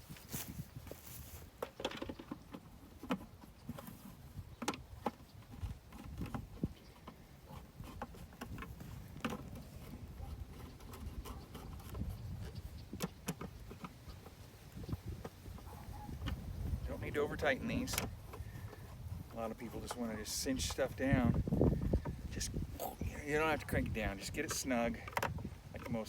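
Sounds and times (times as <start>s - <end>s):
wind buffeting microphone: 0.0s - 1.5s, 4.3s - 26.0s.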